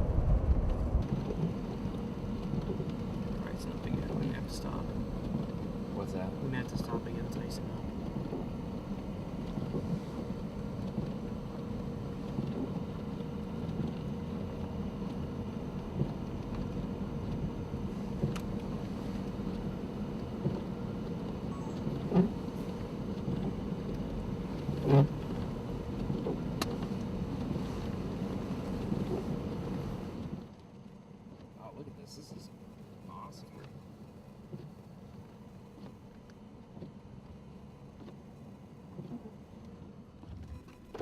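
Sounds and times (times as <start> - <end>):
vehicle engine and road drone: 0.0 - 41.0.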